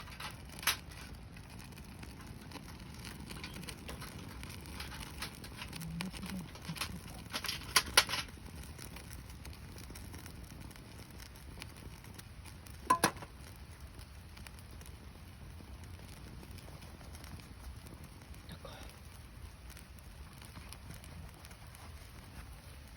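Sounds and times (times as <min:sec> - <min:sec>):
burning wood popping: 0:00.0 - 0:22.9
campfire crackling: 0:00.0 - 0:22.9.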